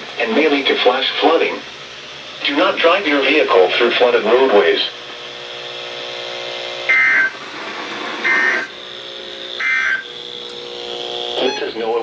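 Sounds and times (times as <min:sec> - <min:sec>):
faint steady hum: 0:00.0 - 0:12.0
digital warbling data tones: 0:06.9 - 0:07.3, 0:08.2 - 0:08.8, 0:09.6 - 0:10.2, 0:11.4 - 0:11.9.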